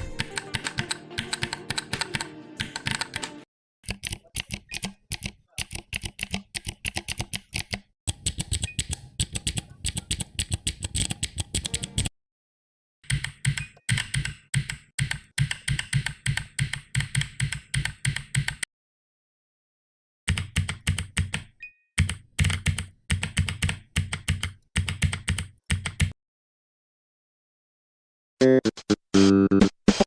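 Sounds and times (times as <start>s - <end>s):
computer keyboard typing: 0.0s - 12.1s, 13.0s - 18.7s, 20.3s - 26.2s.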